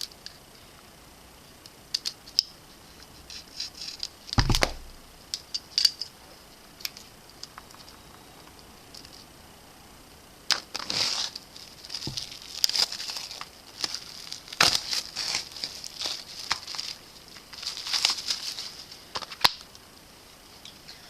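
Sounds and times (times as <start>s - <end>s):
plastic crinkling and tearing: 10.5s - 19.7s.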